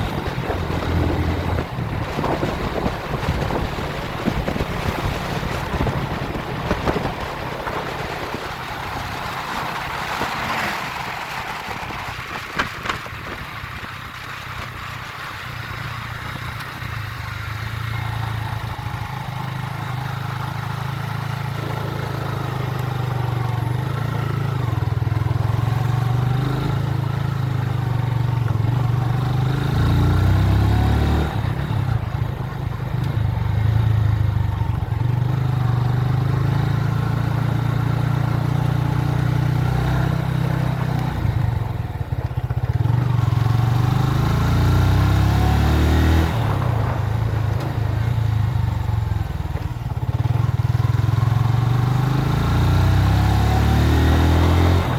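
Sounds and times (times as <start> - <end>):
motorcycle engine running: 0.0 - 54.9.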